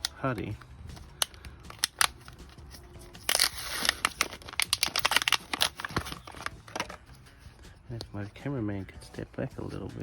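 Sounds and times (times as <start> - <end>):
plastic packaging clicks: 0.0 - 2.5, 3.2 - 7.0
plastic packaging crinkling: 1.1 - 7.0.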